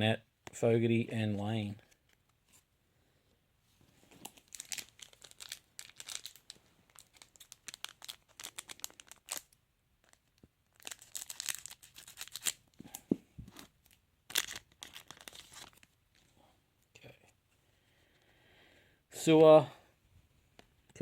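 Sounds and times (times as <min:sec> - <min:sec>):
wrapper tearing and crinkling: 0:04.2 - 0:12.8, 0:13.8 - 0:15.9.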